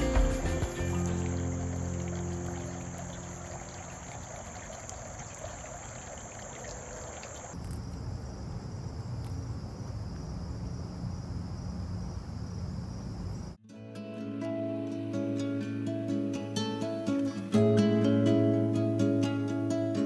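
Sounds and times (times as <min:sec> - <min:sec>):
pulsing insect trill: 0:00.0 - 0:07.6
crickets trilling: 0:00.0 - 0:13.6.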